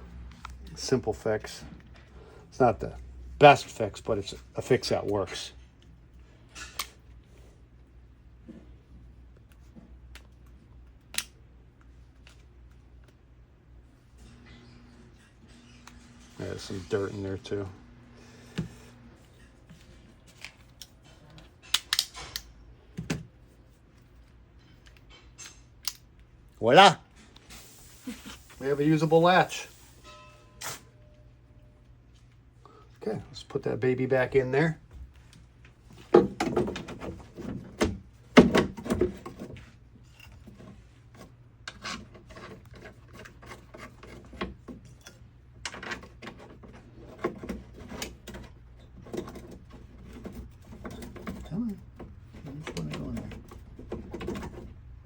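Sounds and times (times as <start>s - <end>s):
metal parts clicking and scraping: 6.4s - 7.3s, 20.4s - 22.6s.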